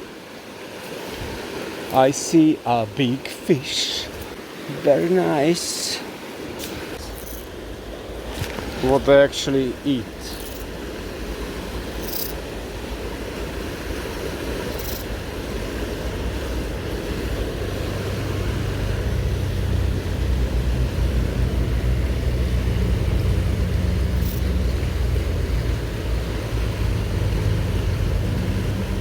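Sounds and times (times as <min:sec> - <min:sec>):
river water rushing: 0:00.0 - 0:29.0
low engine drone: 0:14.8 - 0:29.0.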